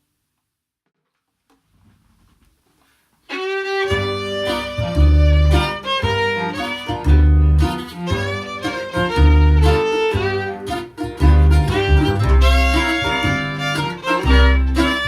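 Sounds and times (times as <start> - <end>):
fiddle playing: 3.3 - 15.0
heavy low bass notes: 4.0 - 15.0.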